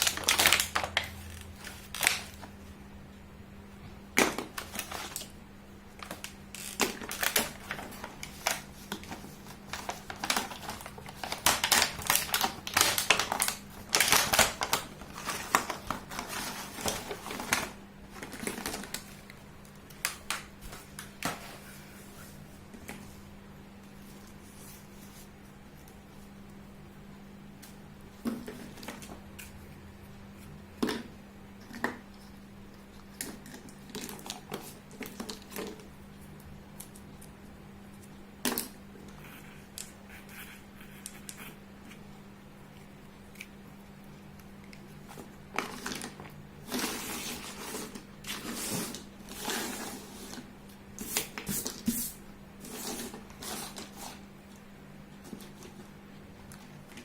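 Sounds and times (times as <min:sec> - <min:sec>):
packaging rustling: 0:00.0 - 0:02.5, 0:06.0 - 0:21.7.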